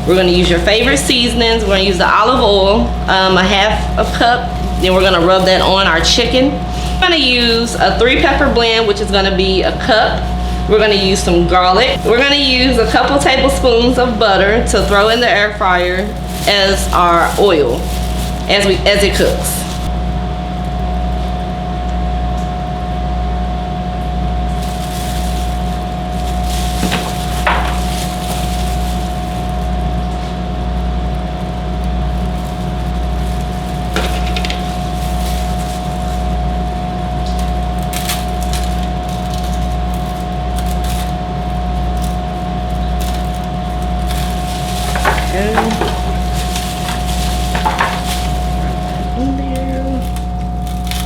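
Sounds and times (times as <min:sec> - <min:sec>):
kitchen knocks and rustles: 0:24.5 - 0:30.4, 0:32.3 - 0:36.4, 0:44.2 - 0:49.2.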